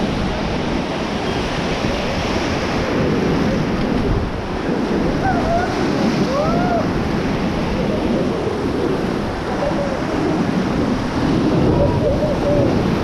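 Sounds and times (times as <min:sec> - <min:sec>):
white water rushing: 0:00.0 - 0:13.0
wind buffeting microphone: 0:00.0 - 0:13.0.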